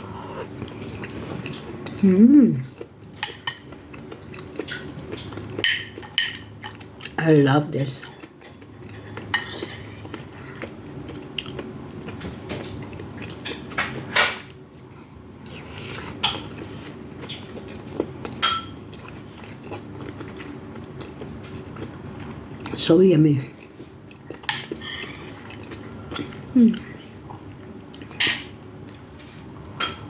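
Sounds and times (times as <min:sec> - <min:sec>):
steady low hum: 0:00.0 - 0:13.8
cutlery clinking against plate: 0:03.2 - 0:03.8, 0:08.4 - 0:09.9, 0:12.2 - 0:14.5, 0:18.3 - 0:18.8, 0:24.4 - 0:25.4, 0:29.8 - 0:30.0.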